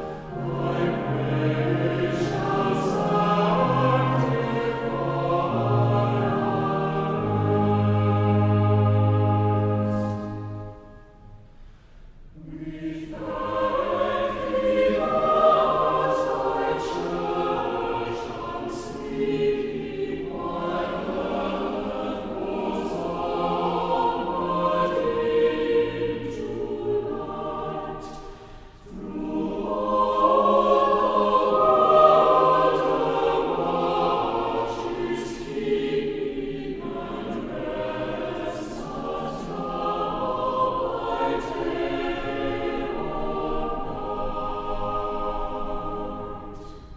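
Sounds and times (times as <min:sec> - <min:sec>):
choir singing: 0:00.0 - 0:11.6, 0:12.3 - 0:46.9
short breaths: 0:11.5 - 0:12.2, 0:28.3 - 0:28.8.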